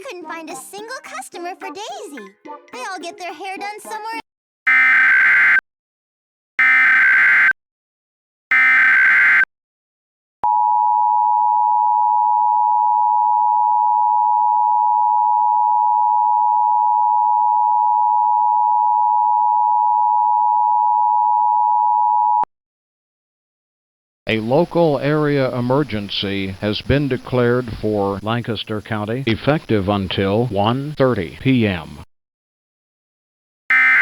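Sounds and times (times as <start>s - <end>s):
screechy digital chirps: 8.5s - 9.4s, 33.7s - 34.0s
two-tone attention signal: 33.7s - 34.0s.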